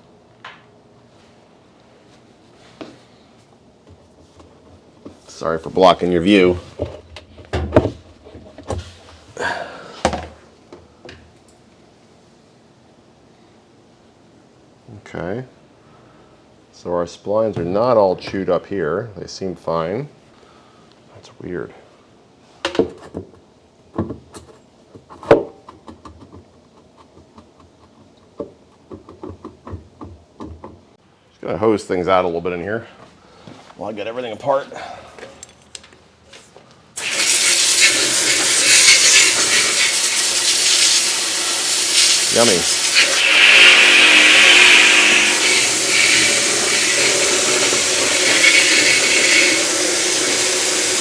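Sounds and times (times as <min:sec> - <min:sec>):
hose water spraying into tub: 0:37.0 - 0:51.0.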